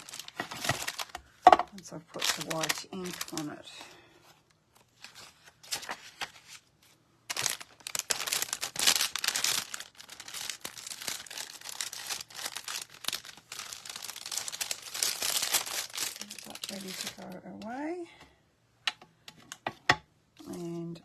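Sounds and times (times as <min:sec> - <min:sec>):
paper rustling: 0:00.0 - 0:01.2, 0:02.1 - 0:17.4.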